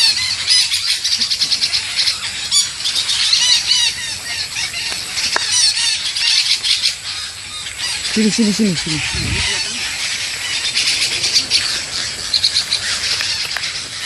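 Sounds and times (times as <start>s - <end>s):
parakeets screeching: 5.5s - 14.0s.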